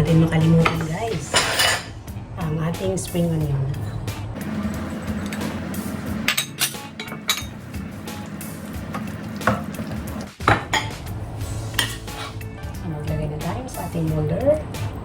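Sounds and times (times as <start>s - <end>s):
utensil scraping a pan: 0.7s - 2.0s, 11.7s - 12.4s.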